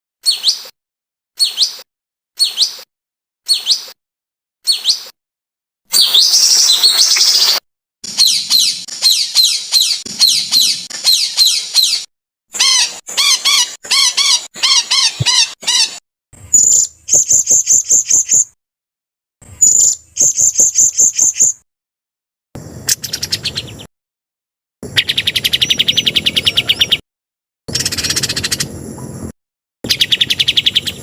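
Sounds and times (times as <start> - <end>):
songbird calls: 0.2 - 0.7, 1.4 - 1.8, 2.4 - 2.9, 3.5 - 4.0, 4.6 - 5.1, 5.9 - 18.5, 19.6 - 21.6, 22.9 - 23.9, 24.9 - 27.0, 27.7 - 29.1, 29.9 - 31.0.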